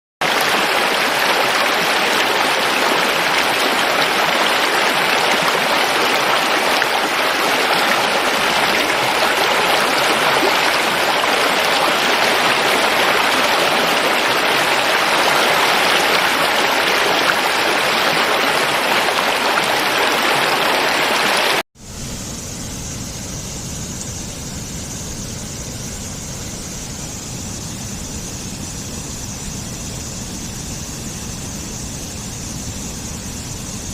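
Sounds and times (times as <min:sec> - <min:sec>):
rushing water hiss: 0:00.2 - 0:21.6.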